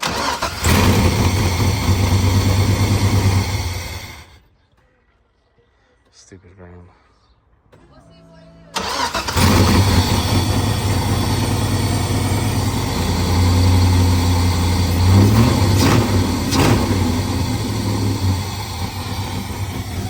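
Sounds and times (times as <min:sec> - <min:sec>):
rough car engine idling: 0:00.0 - 0:04.4, 0:08.8 - 0:20.0.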